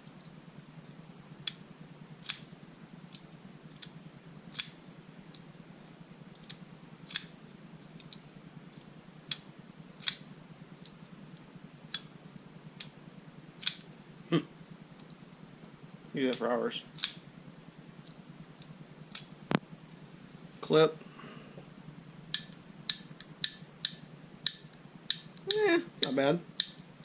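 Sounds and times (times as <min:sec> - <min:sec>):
folding knife clicking: 0:04.5 - 0:04.8, 0:06.4 - 0:07.3, 0:13.6 - 0:13.8, 0:22.3 - 0:26.8.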